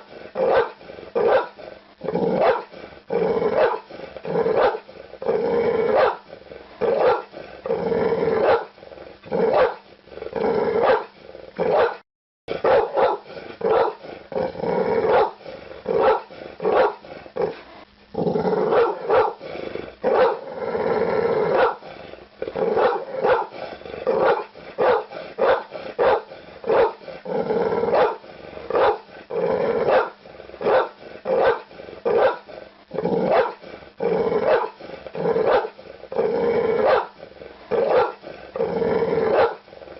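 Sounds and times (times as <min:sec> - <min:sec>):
dog barking and growling: 0:00.0 - 0:39.9.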